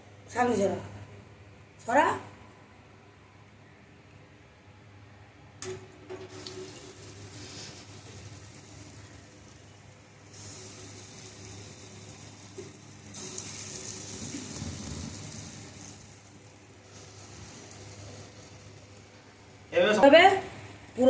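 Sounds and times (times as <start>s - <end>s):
fritters sizzling in hot oil: 6.1s - 19.8s.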